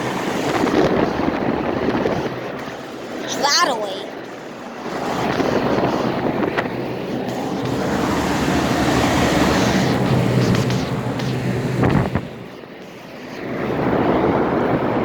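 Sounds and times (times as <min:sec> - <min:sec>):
air conditioner fan blowing: 0:04.6 - 0:12.8.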